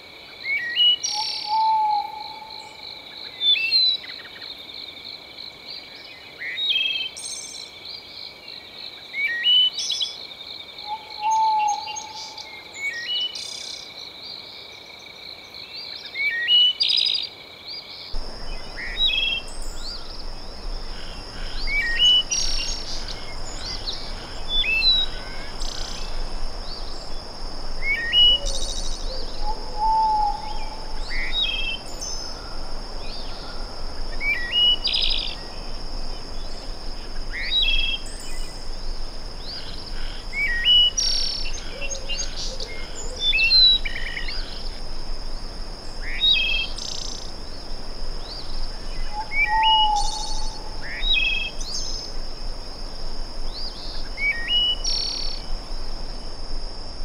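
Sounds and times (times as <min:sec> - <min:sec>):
bird chirps: 0:18.2 - 0:35.8, 0:48.2 - 0:52.1
low hooting call: 0:18.2 - 0:43.6
insect trilling: 0:18.2 - 0:52.8
soft rushing hiss: 0:18.2 - 0:57.0.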